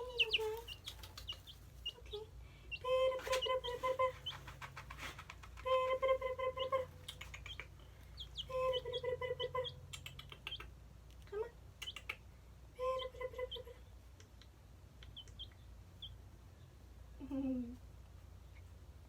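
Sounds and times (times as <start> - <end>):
baby chicks peeping: 0.0 - 10.8, 11.7 - 16.9
scratching clicks in wood shavings: 0.3 - 1.8.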